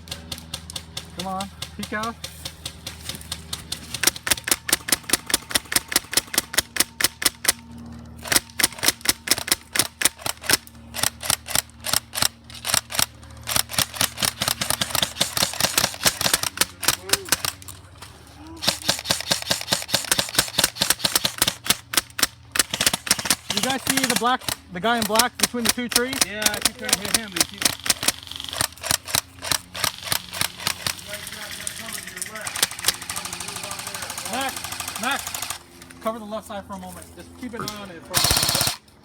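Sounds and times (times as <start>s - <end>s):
airsoft gun firing full auto: 4.0s - 7.6s, 8.2s - 17.6s, 18.6s - 35.6s, 38.2s - 38.8s.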